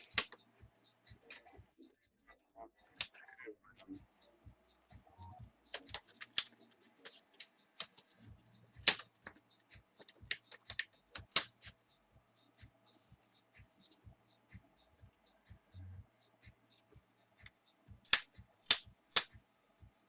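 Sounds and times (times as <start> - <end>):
plastic clips snapping loose: 5.7 - 6.6, 8.8 - 9.4, 10.0 - 11.8.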